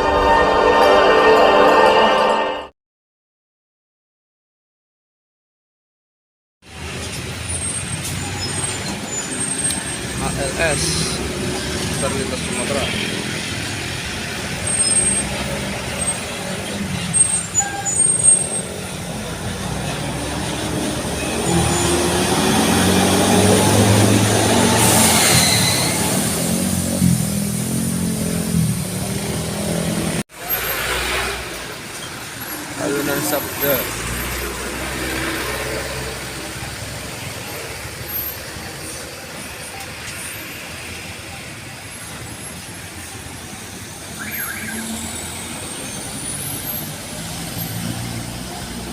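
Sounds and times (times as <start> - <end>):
bus engine and tyre rumble: 6.6 - 48.9
road traffic passing: 6.6 - 48.9
short high squeaks: 16.9 - 18.8, 24.8 - 26.3.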